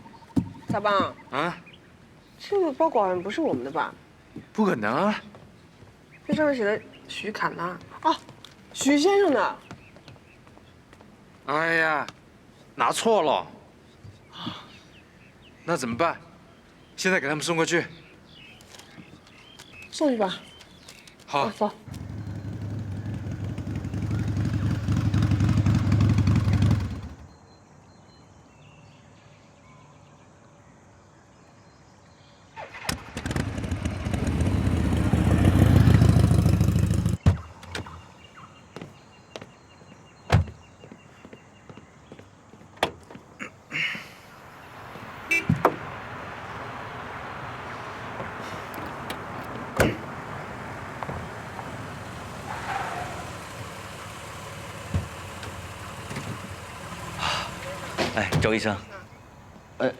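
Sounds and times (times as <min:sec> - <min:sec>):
motor vehicle running: 0:21.9 - 0:27.3, 0:32.7 - 0:37.2, 0:44.3 - 0:59.8.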